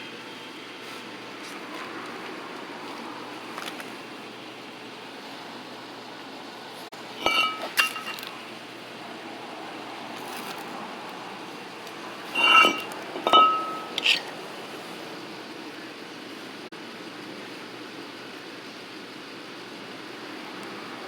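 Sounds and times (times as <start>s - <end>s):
steady background hum: 0.0s - 21.0s
metal pieces clinking together: 7.2s - 8.4s, 12.3s - 14.4s.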